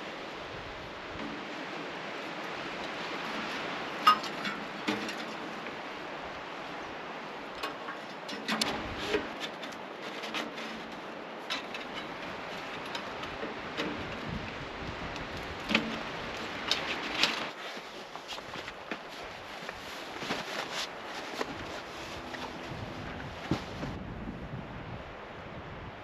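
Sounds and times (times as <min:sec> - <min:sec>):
camp gear knocks and clinks: 0:01.1 - 0:05.8, 0:15.6 - 0:19.2.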